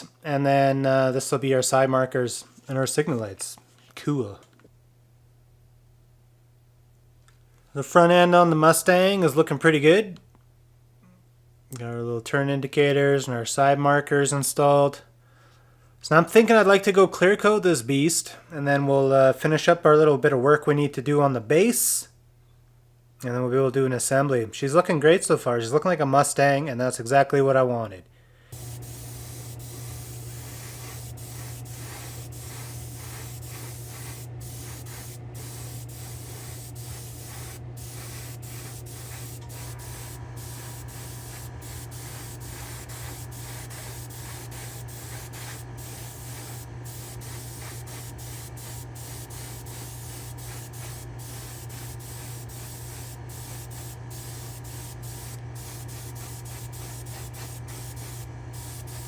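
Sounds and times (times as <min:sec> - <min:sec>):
steady low hum: 0:28.1 - 0:59.0
airbrush hissing: 0:28.5 - 0:59.0.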